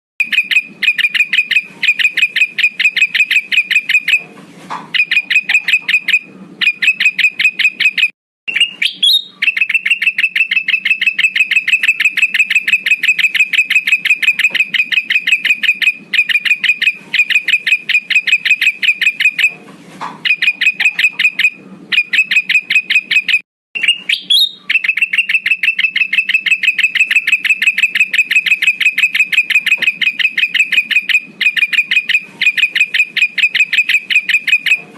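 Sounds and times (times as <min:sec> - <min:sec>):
bulbul calling rapid high notes: 0:05.0 - 0:19.5, 0:20.3 - 0:34.9.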